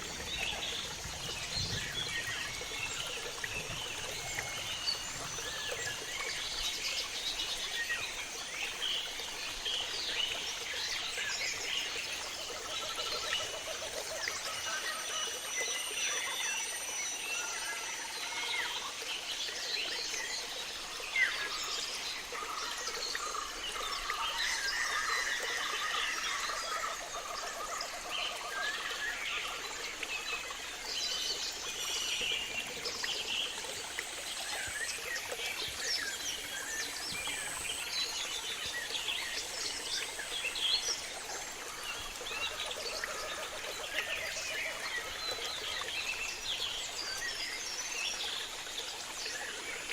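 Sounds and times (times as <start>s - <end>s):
frogs calling in pulsed trains: 0.0s - 18.1s.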